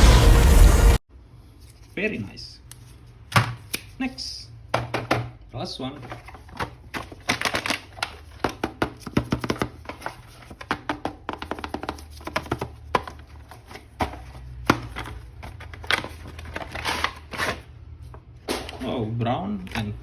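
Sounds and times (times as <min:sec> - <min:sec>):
plastic crinkles clicks and taps: 0:06.5 - 0:13.1.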